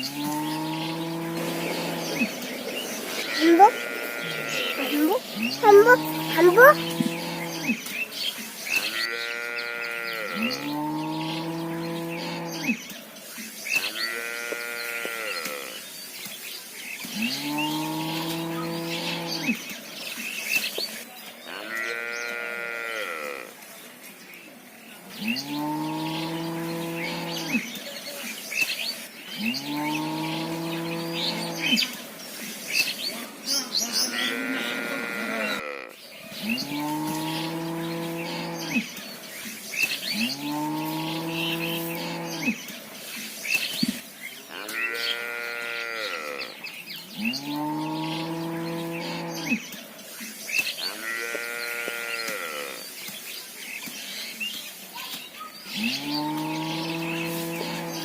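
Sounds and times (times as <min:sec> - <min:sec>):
cows mooing: 0:00.0 - 0:07.8, 0:08.9 - 0:12.8, 0:14.1 - 0:15.7, 0:21.5 - 0:23.5, 0:29.4 - 0:31.8, 0:33.9 - 0:38.9, 0:44.5 - 0:46.5, 0:55.9 - 0:58.0.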